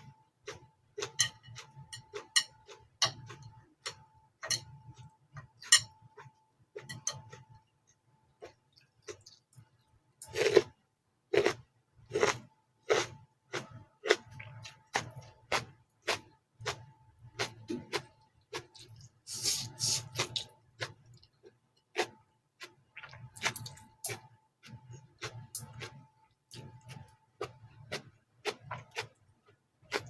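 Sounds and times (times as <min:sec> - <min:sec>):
slurping: 0:18.9 - 0:20.5.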